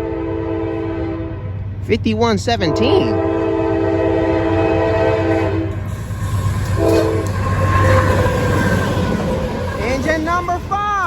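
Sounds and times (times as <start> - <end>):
train air horn blasts: 0.0 - 1.6, 2.6 - 8.7
diesel locomotives rumbling: 0.0 - 11.0.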